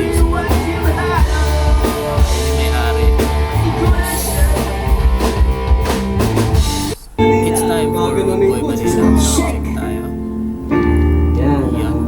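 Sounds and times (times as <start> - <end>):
person singing: 0.0 - 5.2, 7.2 - 12.0
drum kit beat: 0.0 - 7.0
rock band playing: 0.0 - 11.2.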